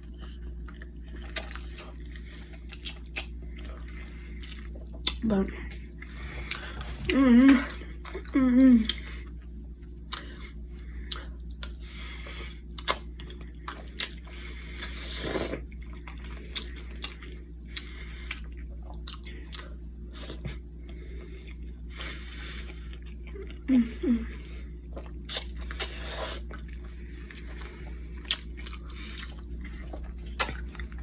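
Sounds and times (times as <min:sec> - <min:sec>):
person chewing: 0:00.0 - 0:09.4, 0:10.0 - 0:23.7, 0:24.8 - 0:31.0
steady low hum: 0:00.0 - 0:31.0.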